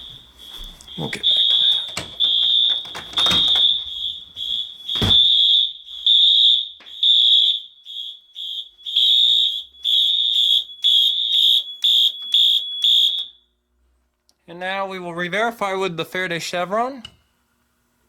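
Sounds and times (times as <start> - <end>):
fire alarm horn pulsing: 0.0 - 13.5.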